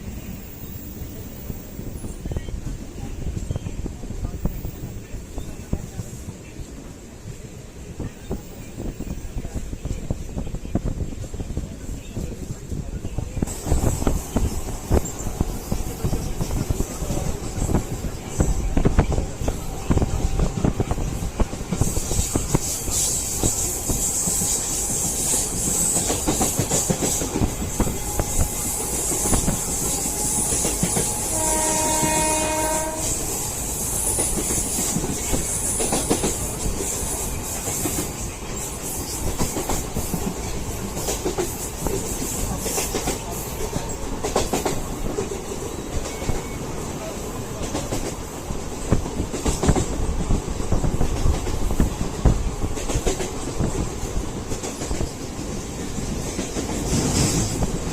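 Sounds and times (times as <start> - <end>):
train rumbling on track: 0.0 - 57.9
train horn: 28.1 - 33.4.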